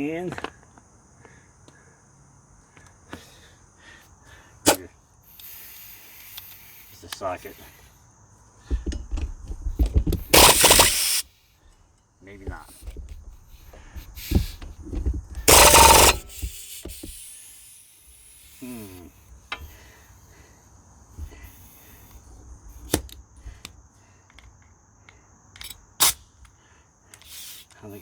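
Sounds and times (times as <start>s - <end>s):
impact wrench rattling burst: 8.8s - 11.3s, 12.5s - 17.6s.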